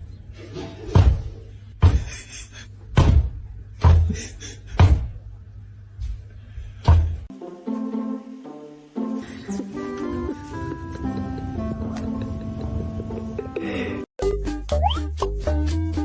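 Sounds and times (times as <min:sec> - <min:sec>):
music notes: 0:07.3 - 0:16.0.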